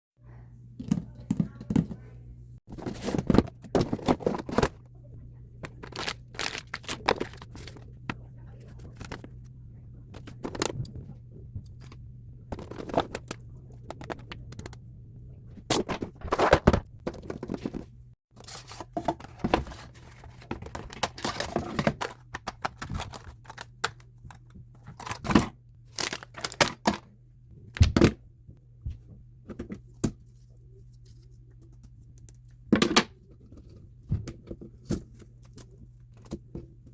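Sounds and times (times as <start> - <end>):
packaging crinkling and tearing: 5.7 - 7.8, 25.9 - 26.9.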